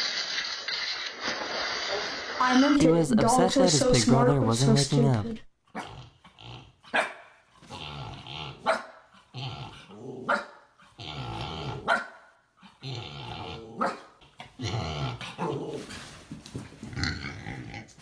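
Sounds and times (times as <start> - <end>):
dog barking and growling: 2.8 - 14.2.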